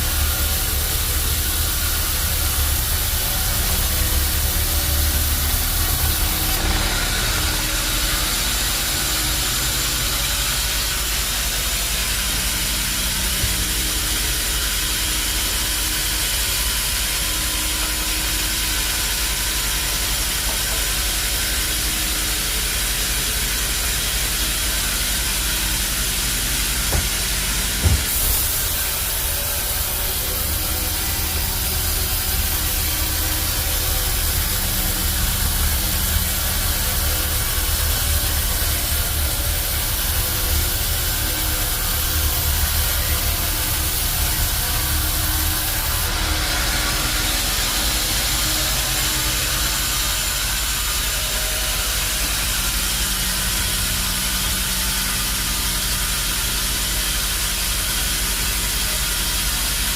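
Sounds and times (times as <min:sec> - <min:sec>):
sawmill machinery humming: 0:00.0 - 0:59.9
brief knock: 0:26.9 - 0:28.4.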